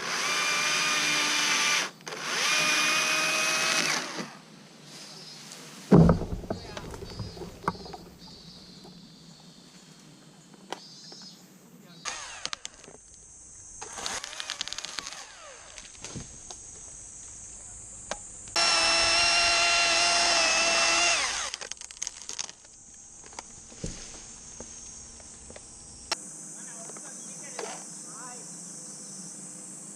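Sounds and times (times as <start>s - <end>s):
chainsaw running at full throttle: 0.0s - 4.2s
insects buzzing: 0.0s - 29.9s.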